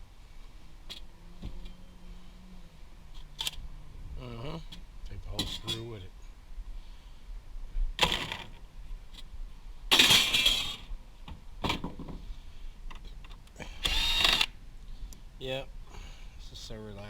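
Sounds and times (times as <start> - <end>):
short rasping bursts: 13.8 - 14.5.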